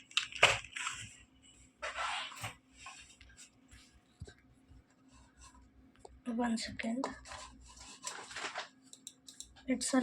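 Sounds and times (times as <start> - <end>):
keyboard and mouse clicks: 8.9 - 9.6.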